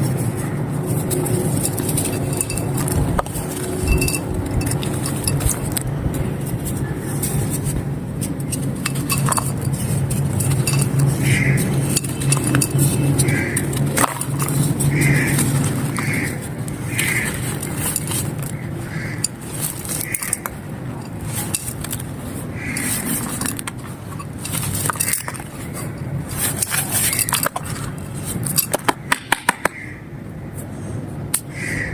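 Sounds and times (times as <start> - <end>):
low hum: 0.0 - 26.8
clay pot pieces crushed: 12.0 - 16.1.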